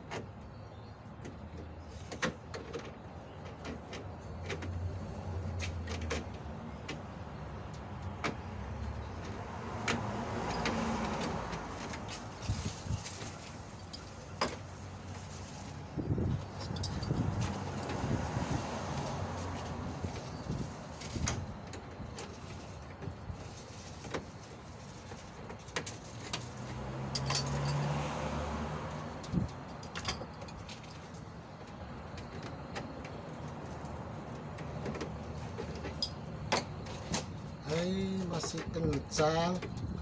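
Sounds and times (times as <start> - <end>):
pliers clinking on metal bolts: 16.6 - 17.2, 27.1 - 27.9.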